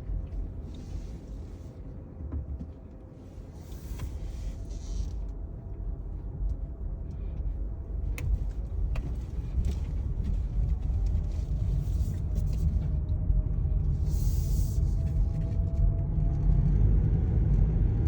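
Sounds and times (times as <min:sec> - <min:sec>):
freight train rumble: 0:00.0 - 0:16.4.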